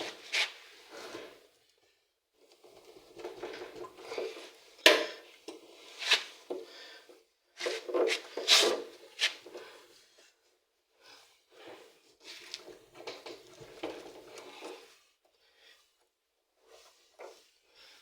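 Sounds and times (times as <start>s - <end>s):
rubbing and rustling of parts: 12.2s - 15.2s.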